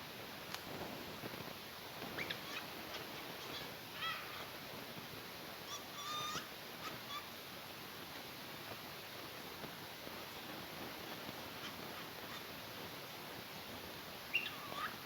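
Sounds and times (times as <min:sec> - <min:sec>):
faint steady hiss: 0:00.0 - 0:15.0
cockatiel chirping and whistling: 0:14.3 - 0:14.9.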